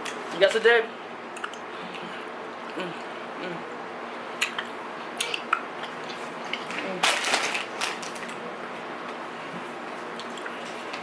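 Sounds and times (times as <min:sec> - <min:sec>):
packaging crinkling: 0:07.0 - 0:08.4.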